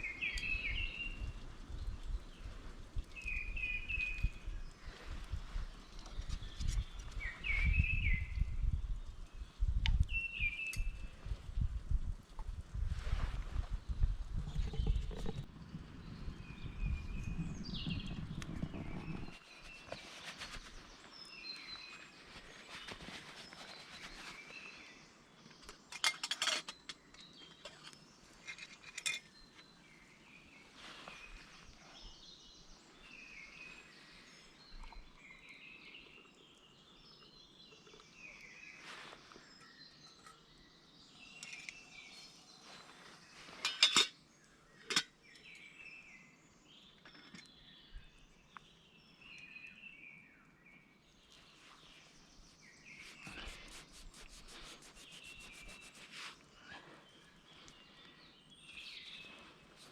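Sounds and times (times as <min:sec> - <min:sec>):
birds chirping: 0:14.0 - 0:59.9.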